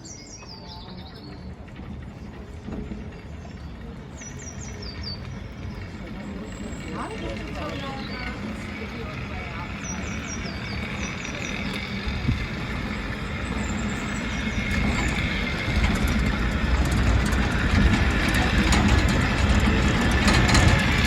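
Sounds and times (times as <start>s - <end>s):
wheels rumbling on rails: 0.0s - 21.0s
small clicks and rattles: 5.0s - 21.0s.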